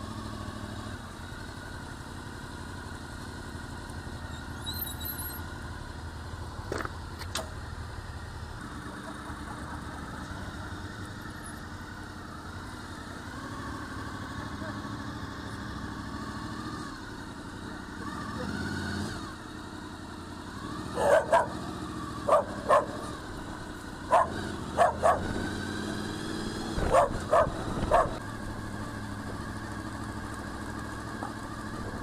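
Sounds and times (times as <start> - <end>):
motorcycle engine idling: 0.0 - 18.6, 19.3 - 32.0
dog barking: 20.9 - 23.1, 24.1 - 25.4, 26.8 - 28.2.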